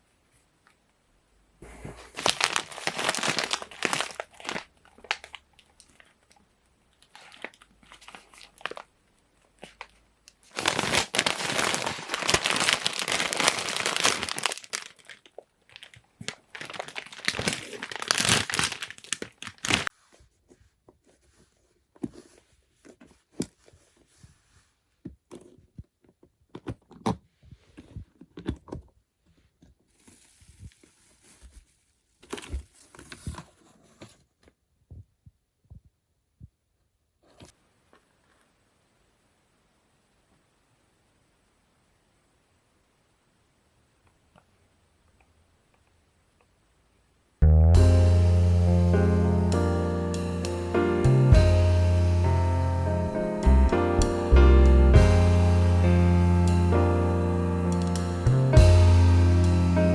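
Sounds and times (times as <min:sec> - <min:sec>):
shopping bag rustling: 0:01.6 - 0:06.0, 0:09.7 - 0:19.9.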